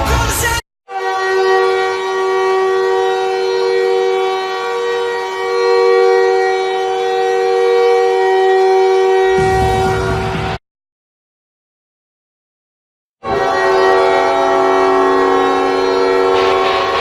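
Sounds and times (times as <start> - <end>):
arena goal horn blast: 0.9 - 10.6, 13.2 - 17.0.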